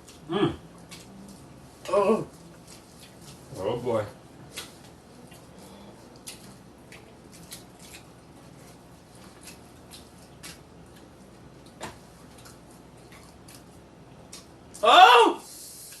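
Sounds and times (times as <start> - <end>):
chewing and lip smacks: 2.3 - 3.4, 4.5 - 14.8.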